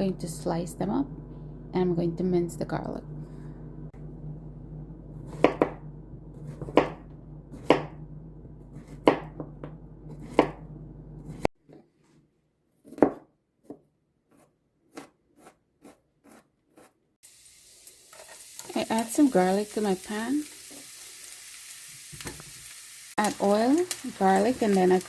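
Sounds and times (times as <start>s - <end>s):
low background hum: 0.0s - 11.5s, 17.2s - 25.0s
knife chopping on cutting board: 5.3s - 5.8s, 6.5s - 8.0s, 8.7s - 10.6s, 12.8s - 16.9s.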